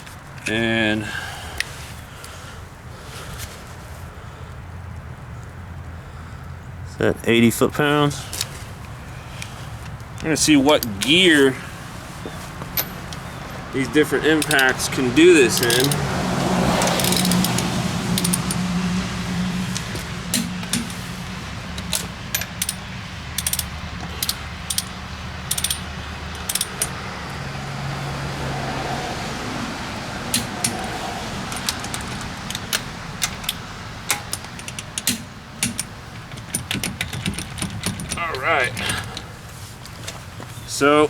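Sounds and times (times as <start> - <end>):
metallic clicks of tools handled: 14.4 - 16.0, 16.8 - 18.6, 19.7 - 21.2, 21.8 - 22.8, 23.4 - 27.0, 30.3 - 39.2.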